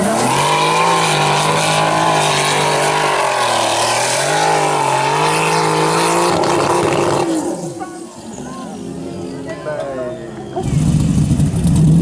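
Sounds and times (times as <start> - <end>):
car engine at high revs: 0.0 - 9.0, 10.4 - 12.0.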